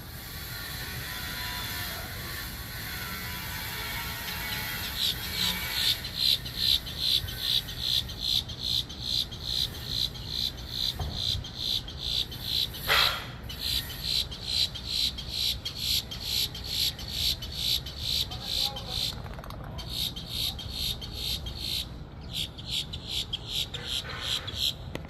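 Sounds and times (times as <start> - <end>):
insect chirping: 4.9 - 12.8, 13.5 - 18.3.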